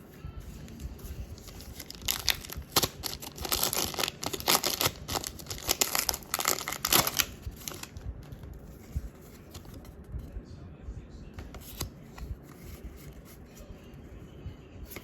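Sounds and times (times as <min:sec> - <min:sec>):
foil wrapper crinkling and tearing: 0:01.4 - 0:08.0.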